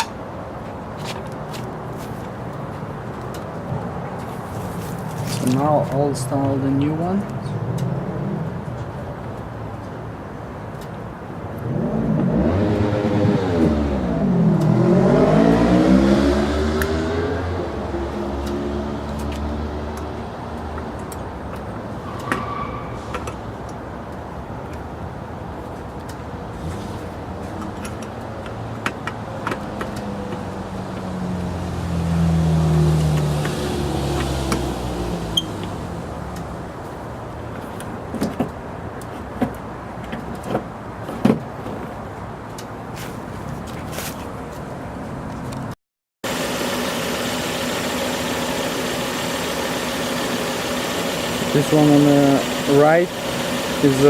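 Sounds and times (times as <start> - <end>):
vehicle engine low hum: 0.0 - 22.2, 22.9 - 54.0
parts clicking and knocking: 27.4 - 31.1.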